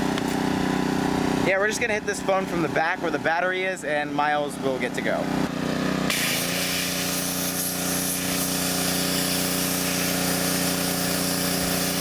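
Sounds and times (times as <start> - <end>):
pressure washer humming: 0.0 - 12.0
water jet hissing: 6.1 - 12.0.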